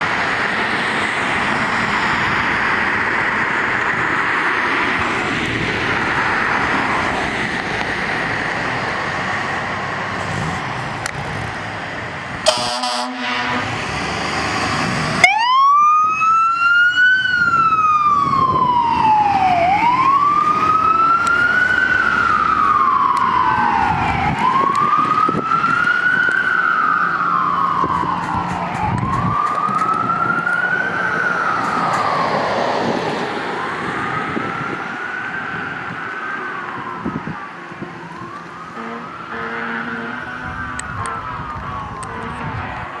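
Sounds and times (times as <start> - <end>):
wailing siren: 0.0 - 10.2, 12.0 - 43.0
fire engine road and engine noise: 0.0 - 43.0
buzzy horn blast: 12.4 - 13.8, 38.8 - 41.4, 42.0 - 42.6.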